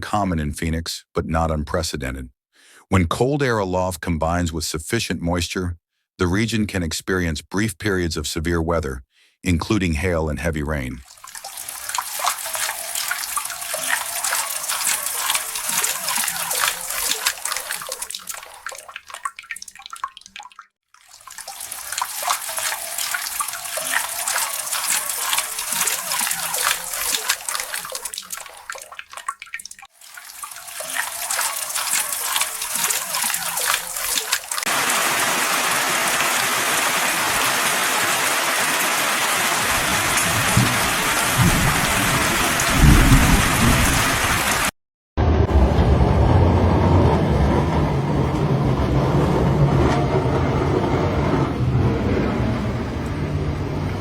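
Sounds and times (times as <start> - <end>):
running water splashing: 11.0 - 44.7
rain: 11.1 - 18.9, 21.1 - 28.6, 30.0 - 44.7.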